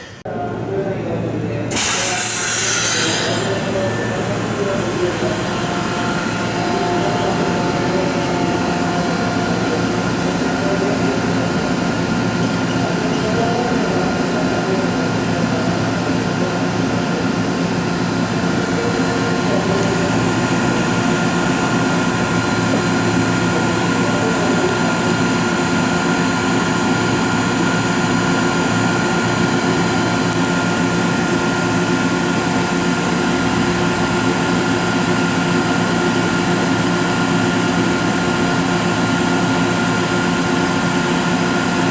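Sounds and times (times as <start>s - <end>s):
air compressor whining: 0.0s - 41.9s.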